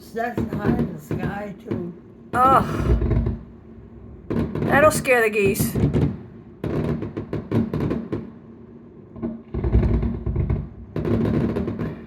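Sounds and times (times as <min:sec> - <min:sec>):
fireworks cracking: 0:00.0 - 0:08.4, 0:09.5 - 0:12.0
deep rumbling booms: 0:02.4 - 0:06.6.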